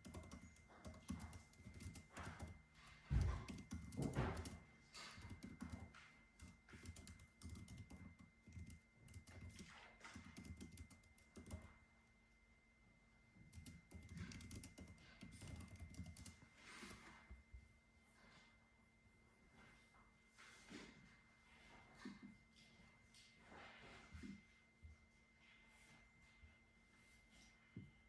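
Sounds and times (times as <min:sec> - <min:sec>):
typing on computer keyboard: 0:00.0 - 0:11.8, 0:13.5 - 0:16.4.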